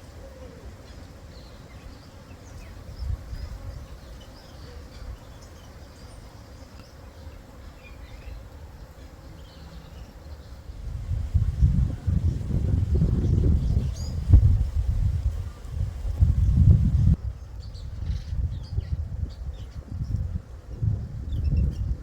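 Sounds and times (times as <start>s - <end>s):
insect buzzing: 0.0s - 17.2s.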